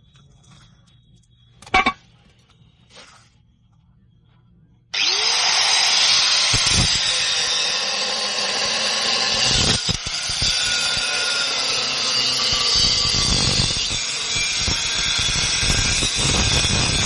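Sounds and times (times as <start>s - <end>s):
power tool grinding metal: 5.0s - 17.0s.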